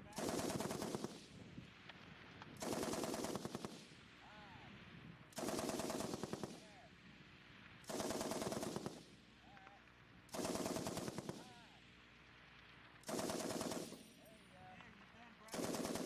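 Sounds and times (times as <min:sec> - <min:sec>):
machine gun bursts: 0:00.1 - 0:01.2, 0:02.6 - 0:03.8, 0:05.4 - 0:06.6, 0:07.9 - 0:09.0, 0:10.3 - 0:11.6, 0:13.0 - 0:14.1, 0:15.5 - 0:16.0.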